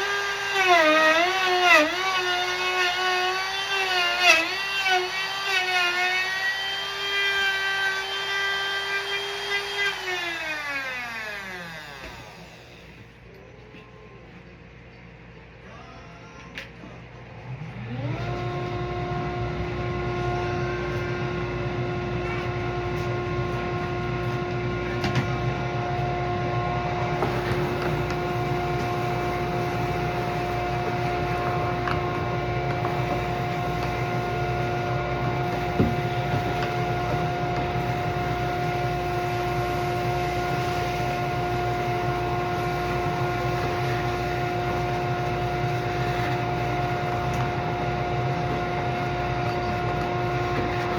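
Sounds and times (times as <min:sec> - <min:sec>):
small electric motor humming: 0:00.0 - 0:13.0.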